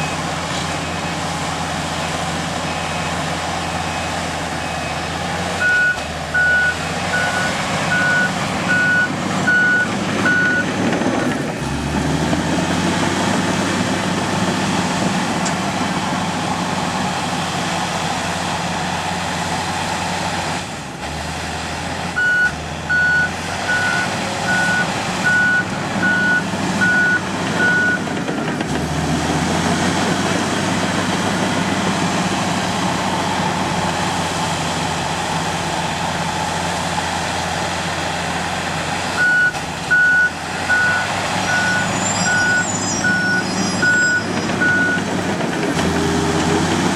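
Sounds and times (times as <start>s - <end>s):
bulldozer diesel engine: 0.0s - 46.9s
reversing alarm beeping: 3.8s - 10.7s, 22.2s - 28.0s, 39.2s - 45.0s.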